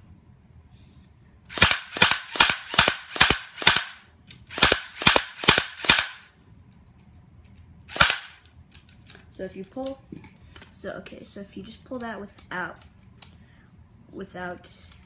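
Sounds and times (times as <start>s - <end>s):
airsoft pistol shots: 1.5s - 6.3s, 7.9s - 8.4s.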